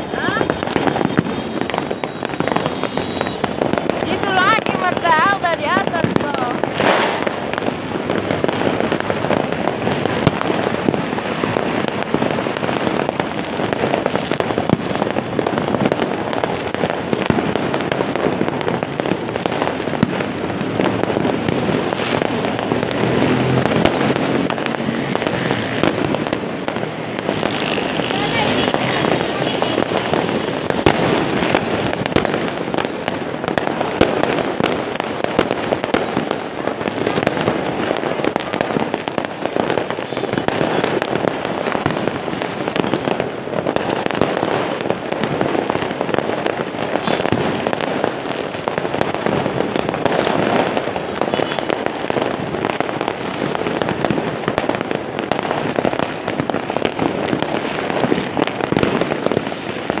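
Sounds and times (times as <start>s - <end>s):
fireworks crackling and popping: 0.0s - 60.0s
sharp firework cracks: 0.0s - 60.0s.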